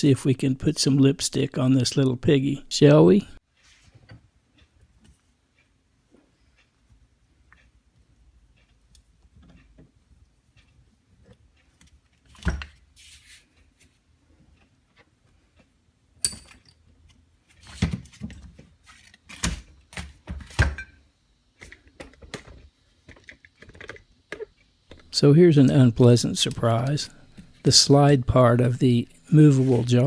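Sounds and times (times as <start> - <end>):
ringing metal clink: 16.2 - 16.7.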